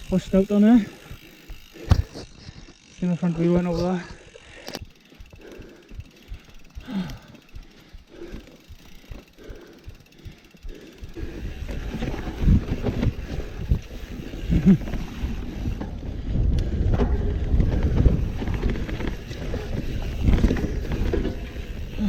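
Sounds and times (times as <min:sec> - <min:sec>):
bike hub ticking: 0:00.0 - 0:22.0
tyres rumbling over rough ground: 0:10.4 - 0:22.0
wind on microphone: 0:15.6 - 0:21.3.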